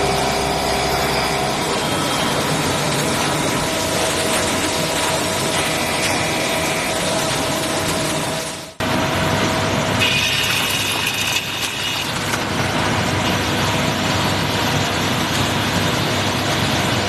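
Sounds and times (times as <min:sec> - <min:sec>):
cnc machine running: 0:00.0 - 0:16.5
high machine whine: 0:00.0 - 0:17.0.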